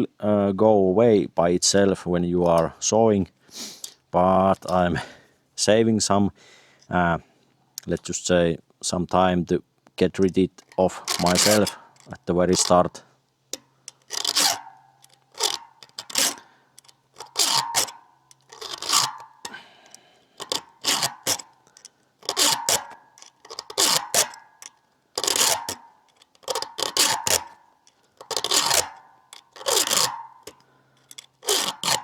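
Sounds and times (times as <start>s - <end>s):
hand file scraping chainsaw chain: 2.4s - 5.0s, 10.0s - 32.0s.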